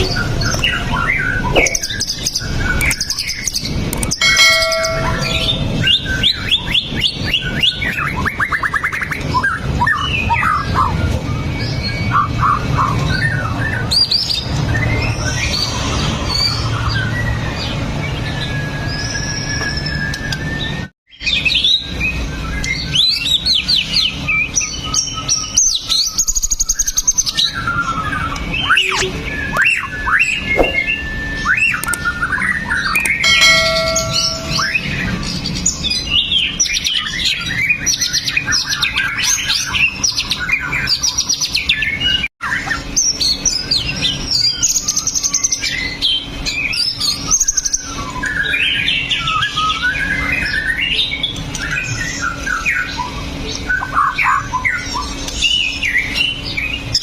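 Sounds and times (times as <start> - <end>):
bird singing whistles and trills: 0.0 - 57.0
low steady hum: 4.2 - 6.2, 33.2 - 35.0.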